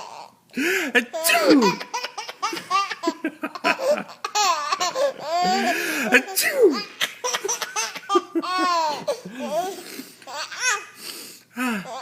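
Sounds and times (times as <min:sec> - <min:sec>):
baby laughing: 0:00.9 - 0:11.0
fake sneeze: 0:01.1 - 0:01.9.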